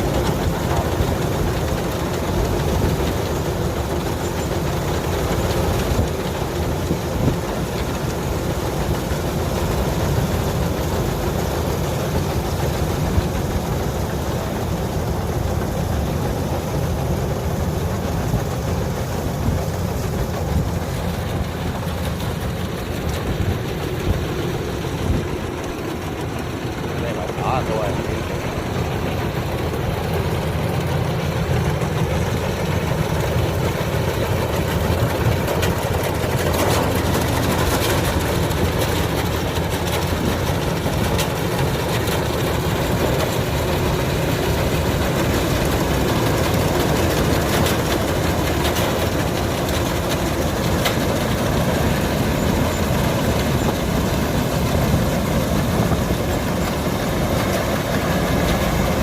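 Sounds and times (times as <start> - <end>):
diesel engine drone: 0.0 - 59.0
machinery clatter and rattles: 0.0 - 59.0.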